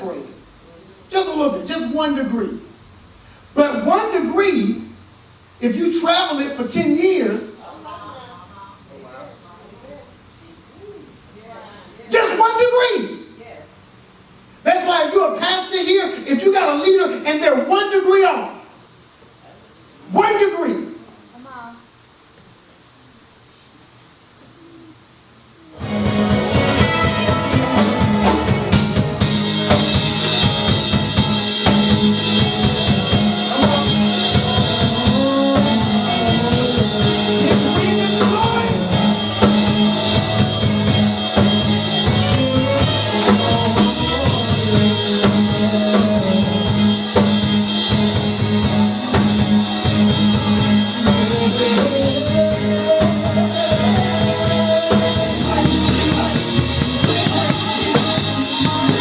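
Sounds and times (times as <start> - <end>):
drum kit beat: 25.8 - 59.0.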